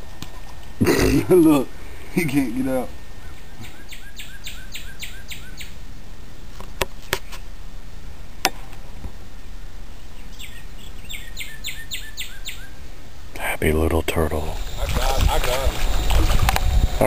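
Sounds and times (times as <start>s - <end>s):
songbird singing: 0.7s - 5.9s, 9.4s - 13.0s, 13.8s - 17.0s.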